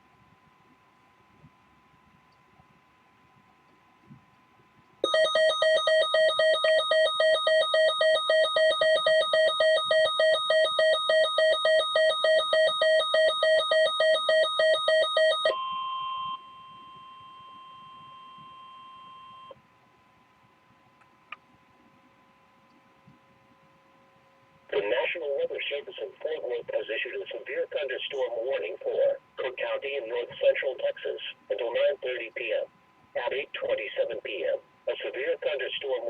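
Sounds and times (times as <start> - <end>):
pulsing electronic alarm: 5.0 - 19.6
steady single alarm tone: 5.0 - 19.6.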